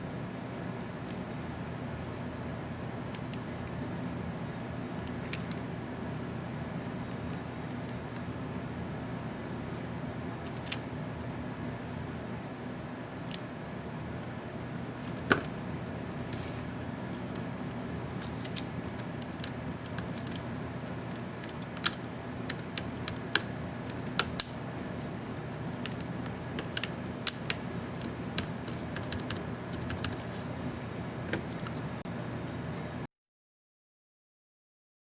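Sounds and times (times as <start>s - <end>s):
steady low hum: 0.0s - 33.1s.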